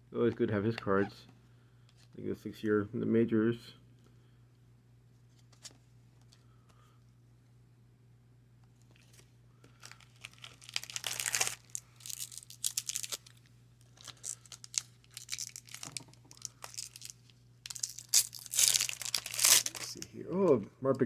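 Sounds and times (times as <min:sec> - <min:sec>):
wrapper tearing and crinkling: 0:09.7 - 0:20.1.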